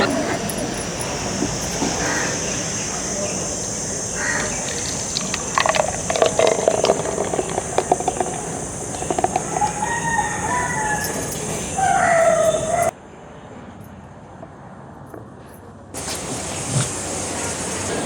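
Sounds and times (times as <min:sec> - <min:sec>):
chickens clucking: 0:00.0 - 0:12.9
steady high hiss: 0:00.0 - 0:12.9, 0:16.0 - 0:18.0
rooster crowing: 0:04.1 - 0:12.9.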